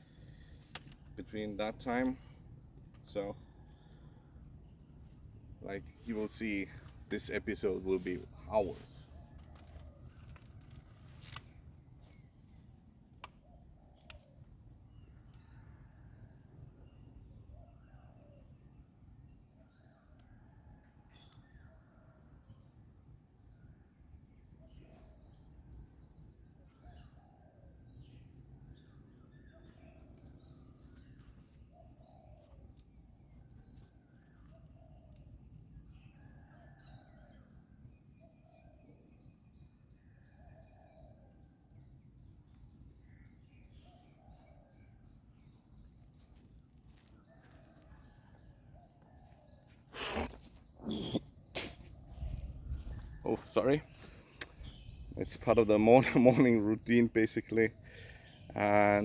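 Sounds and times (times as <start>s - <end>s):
birds calling: 49.0s - 59.0s.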